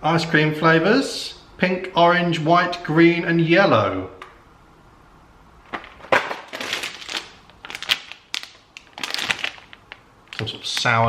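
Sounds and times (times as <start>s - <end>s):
plastic packaging crinkling: 5.6s - 11.0s.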